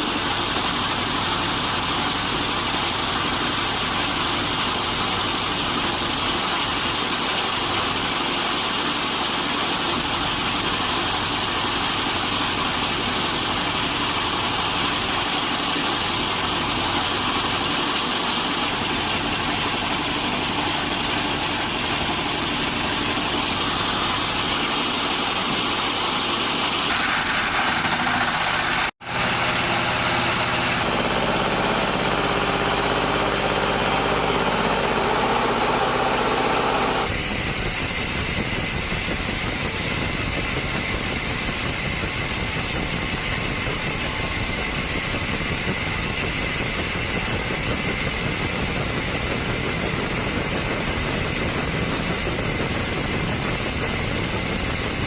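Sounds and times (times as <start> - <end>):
woodworking machinery droning: 0.0 - 55.0.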